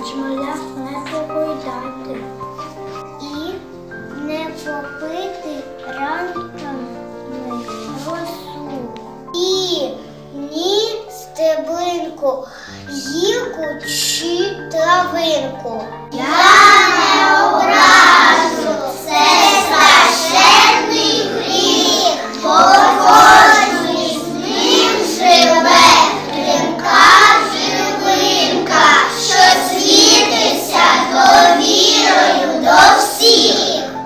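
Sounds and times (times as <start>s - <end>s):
musical accompaniment: 0.0s - 10.4s, 12.8s - 34.0s
child singing: 16.2s - 33.9s.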